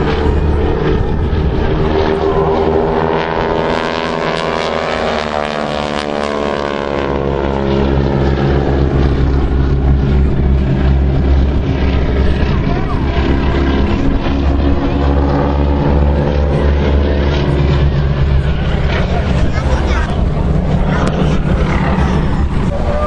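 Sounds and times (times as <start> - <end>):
propeller aircraft engines droning: 0.0 - 23.0.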